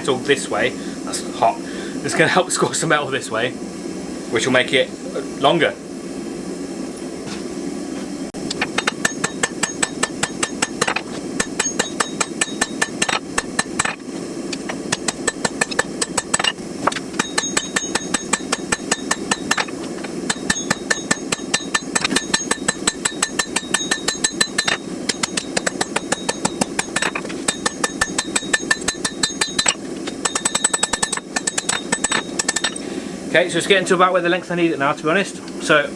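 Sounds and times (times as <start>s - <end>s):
low hum: 8.2s - 33.3s
hammer ringing on anvil: 8.6s - 14.0s, 14.9s - 16.6s, 17.2s - 32.9s.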